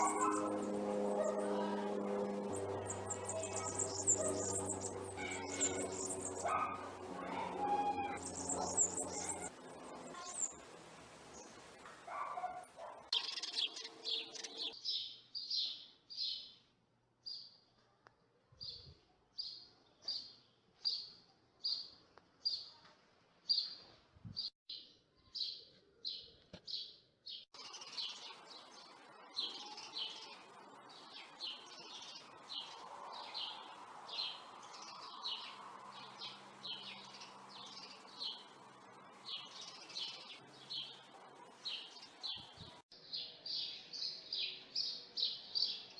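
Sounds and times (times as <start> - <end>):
bird chirping: 0.0 - 9.5, 13.1 - 17.7, 24.4 - 45.9.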